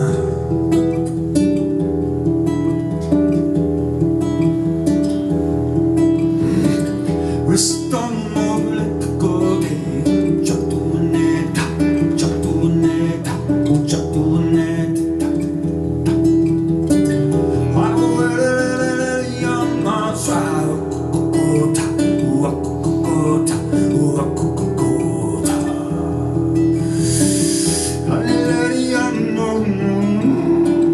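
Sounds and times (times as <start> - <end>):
acoustic guitar strumming: 0.0 - 30.9
pitch sliding sounds: 6.2 - 7.2.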